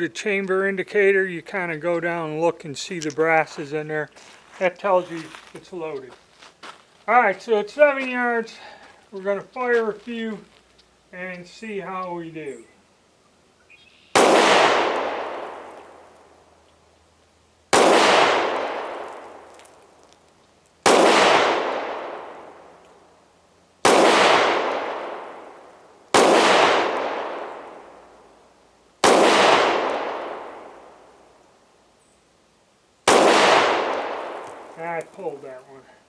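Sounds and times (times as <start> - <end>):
pistol shots with echo: 14.2 - 15.8, 17.8 - 19.4, 20.8 - 22.6, 23.8 - 27.9, 29.0 - 30.8, 33.1 - 34.7.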